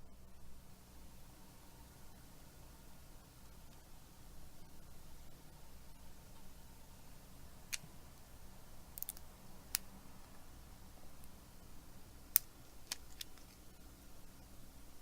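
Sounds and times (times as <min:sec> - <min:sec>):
faint low hum: 0:00.0 - 0:15.0
small tools clicking and tapping: 0:09.0 - 0:09.8.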